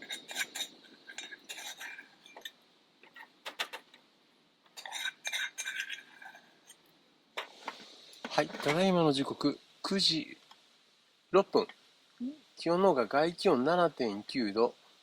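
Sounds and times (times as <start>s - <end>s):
cutlery clinking against a dish: 0.0s - 3.9s, 4.8s - 6.4s.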